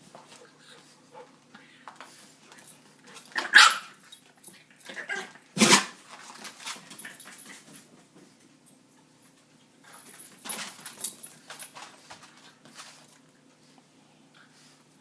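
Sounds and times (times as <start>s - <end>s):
dog barking: 3.4s - 3.9s.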